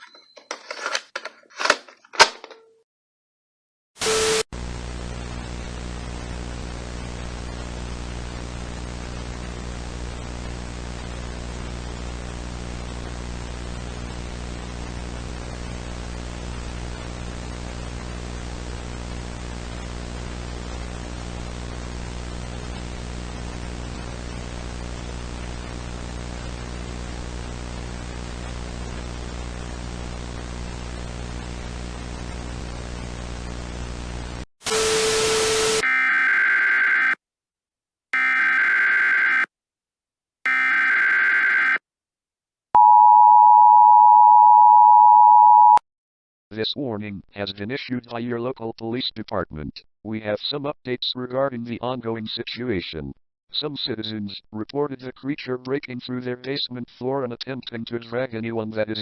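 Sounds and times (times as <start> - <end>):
shrill electronic data tones: 38.2 - 39.5, 40.5 - 41.8.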